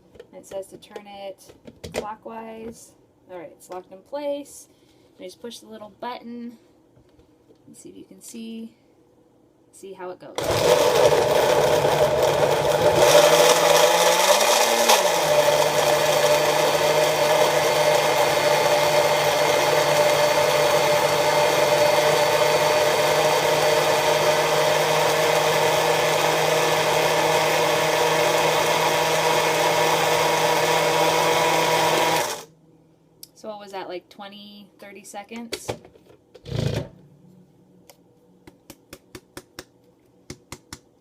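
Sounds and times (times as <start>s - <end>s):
blender running: 10.4s - 32.5s.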